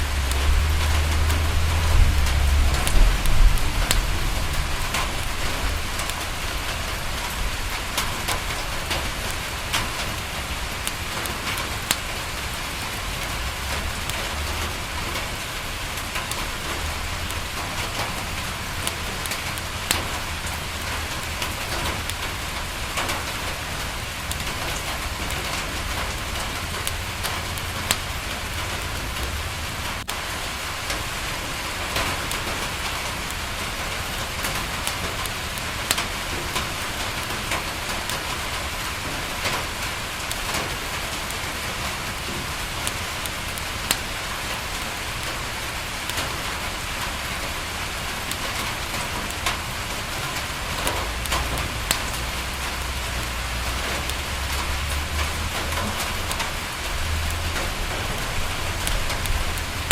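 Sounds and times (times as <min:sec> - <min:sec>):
low rumble: 0:00.0 - 0:07.7
rain on a window: 0:00.0 - 0:59.9
wood fire crackling: 0:00.0 - 0:59.9.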